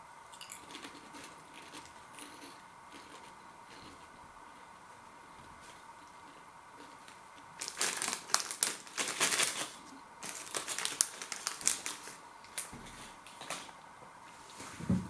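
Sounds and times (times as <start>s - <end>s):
snack packet rustling and crinkling: 5.6s - 13.8s.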